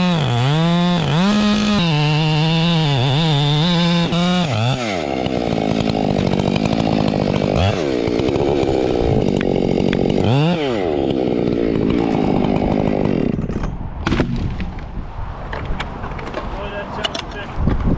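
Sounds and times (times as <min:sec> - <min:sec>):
two-stroke chainsaw revving: 0:00.0 - 0:13.6.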